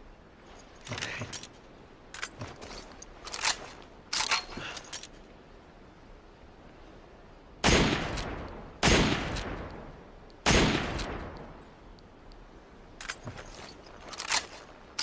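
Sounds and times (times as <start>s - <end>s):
rifle shots with echoing decay: 7.6s - 9.8s, 10.4s - 11.4s.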